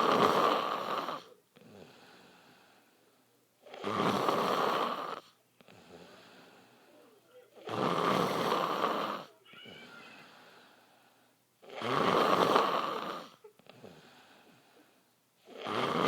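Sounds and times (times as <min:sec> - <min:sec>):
man snoring loudly: 0:00.0 - 0:01.3, 0:03.7 - 0:05.2, 0:07.6 - 0:09.3, 0:11.7 - 0:13.4, 0:15.5 - 0:16.0
soft breath: 0:01.2 - 0:03.4, 0:05.2 - 0:07.5, 0:08.8 - 0:11.4, 0:12.8 - 0:15.1.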